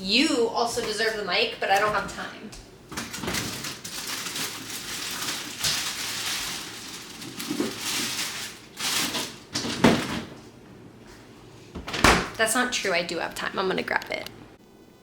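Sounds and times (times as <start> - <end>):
rustling handling noise: 2.9 - 10.5.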